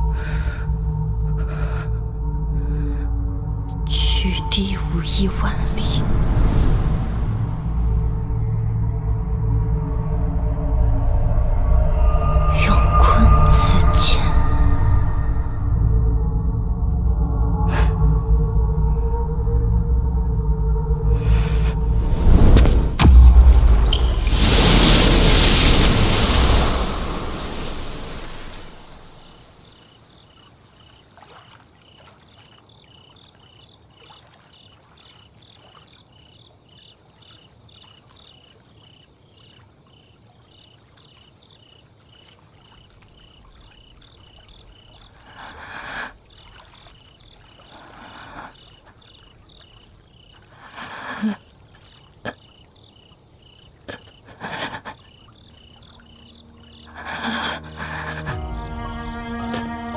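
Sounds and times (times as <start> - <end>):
loud rushing noise: 22.2 - 29.5.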